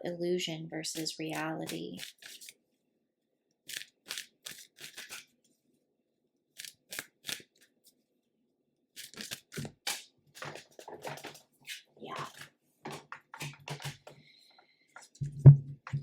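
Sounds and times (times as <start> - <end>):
cards shuffling: 1.0 - 2.5, 3.7 - 5.3, 6.6 - 7.8, 9.0 - 14.1.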